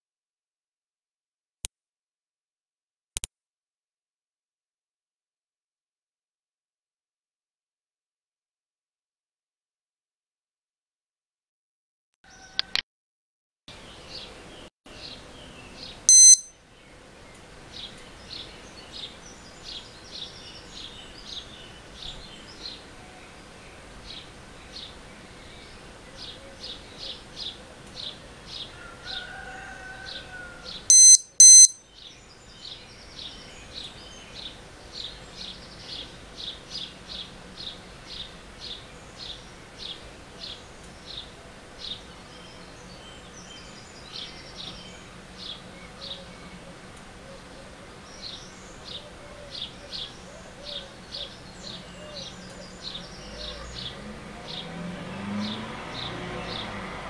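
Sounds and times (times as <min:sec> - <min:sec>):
high chirp: 0:16.1 - 0:16.5, 0:30.9 - 0:31.8
loud electronic beeps: 0:16.1 - 0:16.5, 0:30.9 - 0:31.8.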